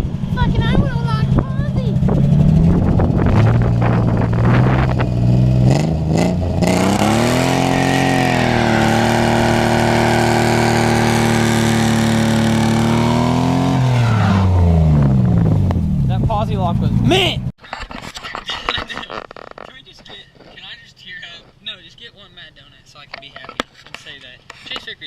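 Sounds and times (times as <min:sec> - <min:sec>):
car engine revving: 0:00.0 - 0:17.5.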